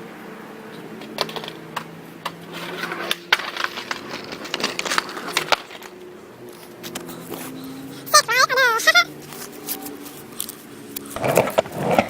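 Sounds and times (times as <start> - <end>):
skateboard rolling and clacking: 0.8 - 7.8, 10.9 - 12.0.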